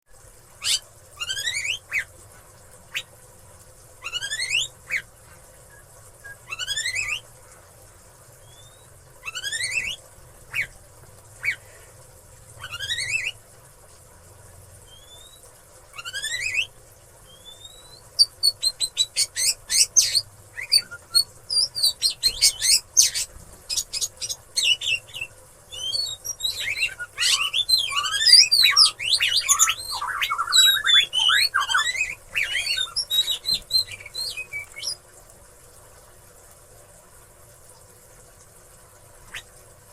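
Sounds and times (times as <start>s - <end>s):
bird rising whistled calls: 5.7s - 7.2s, 14.9s - 15.4s, 17.3s - 35.0s.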